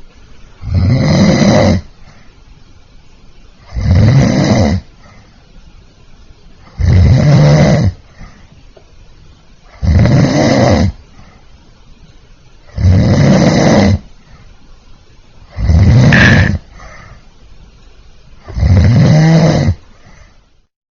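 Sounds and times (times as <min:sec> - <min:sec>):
man snoring: 0:00.6 - 0:01.9, 0:03.7 - 0:04.8, 0:06.7 - 0:08.0, 0:09.7 - 0:11.0, 0:12.7 - 0:14.0, 0:15.5 - 0:16.7, 0:18.5 - 0:19.8.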